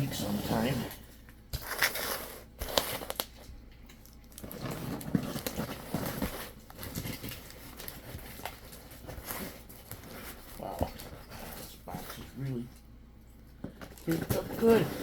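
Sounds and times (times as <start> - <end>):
cardboard box scraping and rustling: 4.4 - 10.5, 14.1 - 15.0.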